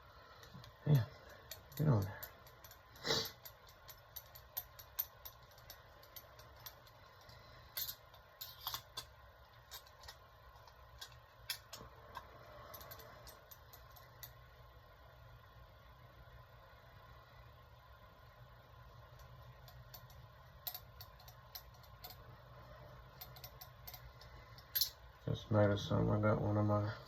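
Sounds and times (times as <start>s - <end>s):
hand tools clicking and clinking: 0.4s - 14.4s, 19.2s - 22.3s, 23.2s - 25.0s.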